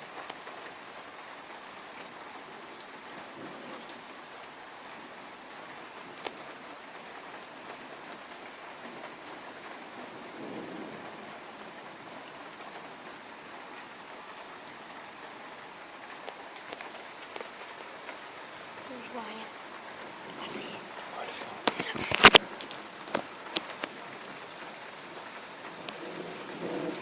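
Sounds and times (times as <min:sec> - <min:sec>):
rain falling on a surface: 0:00.0 - 0:27.0
low thunder rumble: 0:25.8 - 0:27.0.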